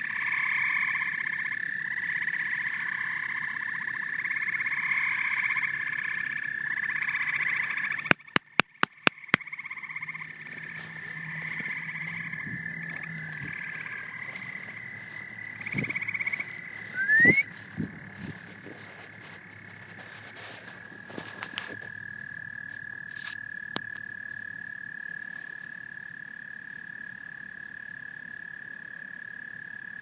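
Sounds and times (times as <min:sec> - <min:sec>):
frogs calling in trills: 0:00.0 - 0:30.0
sharp clicks: 0:08.1 - 0:09.4
short rising call: 0:16.9 - 0:17.5.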